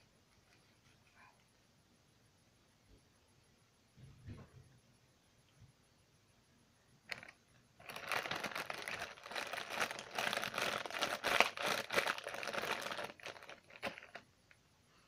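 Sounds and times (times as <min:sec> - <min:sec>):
slime crackling while kneaded: 0:07.1 - 0:14.2.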